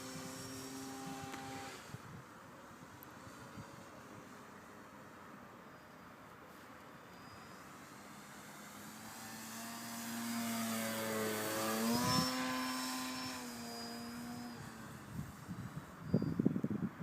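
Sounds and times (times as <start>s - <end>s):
model airplane motor whining: 0.0s - 2.2s, 6.6s - 16.5s.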